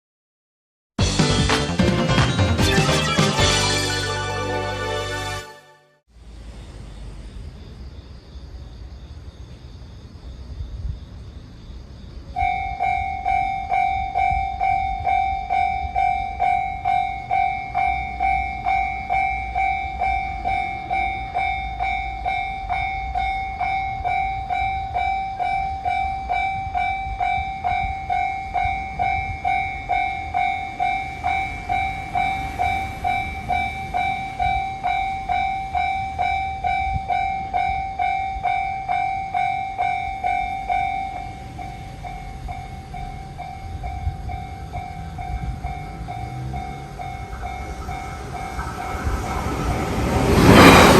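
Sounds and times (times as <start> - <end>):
level crossing alarm tone: 12.4 - 50.9.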